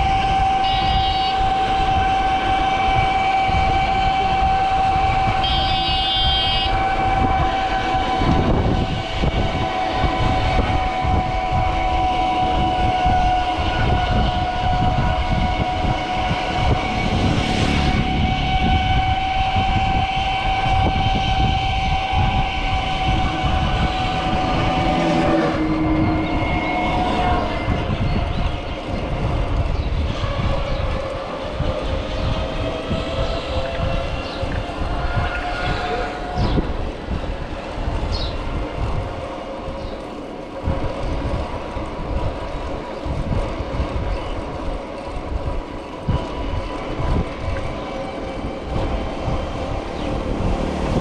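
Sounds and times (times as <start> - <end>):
train horn long blast: 0.0 - 40.8, 46.0 - 51.0
train running by: 0.0 - 51.0
short high horn beeps: 0.6 - 1.4, 5.4 - 6.8.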